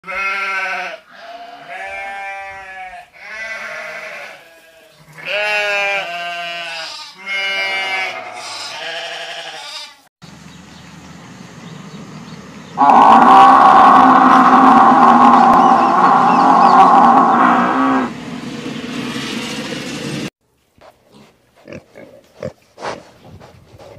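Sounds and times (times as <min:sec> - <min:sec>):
sheep or goats bleating: 0:00.0 - 0:10.1, 0:12.8 - 0:18.0
loud steady sound: 0:12.8 - 0:20.3.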